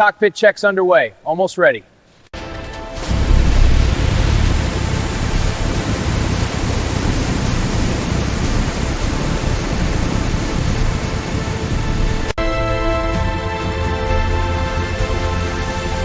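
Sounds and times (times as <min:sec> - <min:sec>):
aircraft engine roaring: 0:03.2 - 0:12.4.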